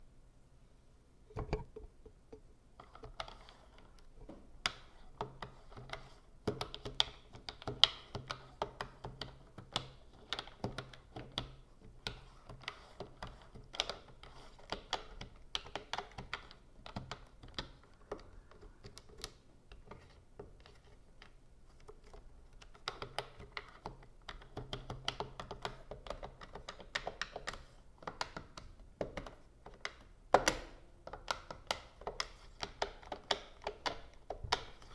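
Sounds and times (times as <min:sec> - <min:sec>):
computer keyboard typing: 0:04.6 - 0:20.8, 0:22.0 - 0:30.0, 0:31.0 - 0:34.9.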